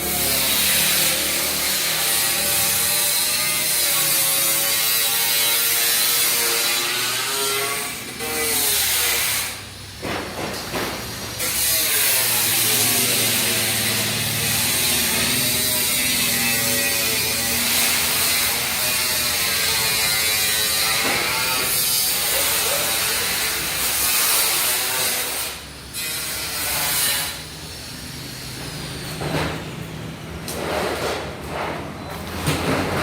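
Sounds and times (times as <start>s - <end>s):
power tool grinding metal: 0.0s - 9.9s, 11.0s - 29.2s.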